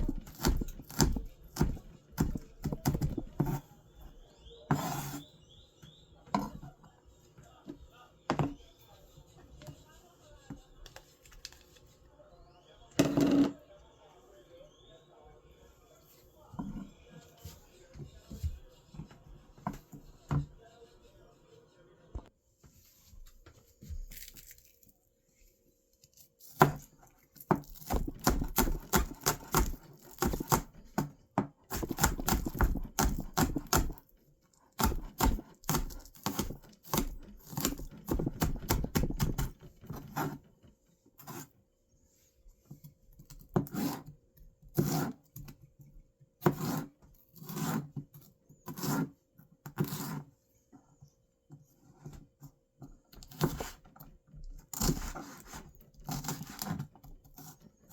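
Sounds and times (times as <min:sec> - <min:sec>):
food preparation knocks and scrapes: 0:00.0 - 0:03.7, 0:04.7 - 0:05.3, 0:05.9 - 0:06.8, 0:16.5 - 0:20.6, 0:26.4 - 0:34.2, 0:34.8 - 0:40.5, 0:42.6 - 0:45.6, 0:46.4 - 0:50.3, 0:51.0 - 0:57.8.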